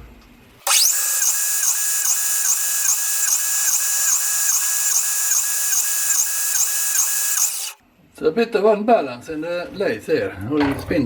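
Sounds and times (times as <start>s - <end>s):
metal lathe running with pulsing: 0.7s - 7.8s.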